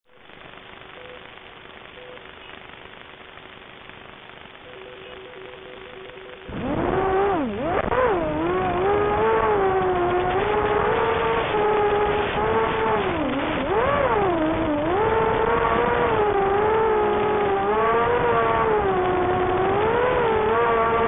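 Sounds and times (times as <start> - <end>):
hiss with faint steady tone: 0.1 - 21.0
quadcopter motors whining: 6.5 - 21.0.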